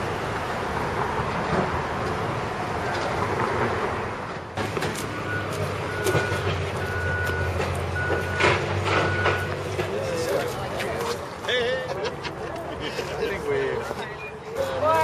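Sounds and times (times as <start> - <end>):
outdoor noise: 0.0 - 15.0
backup alarm beeping: 5.2 - 9.6.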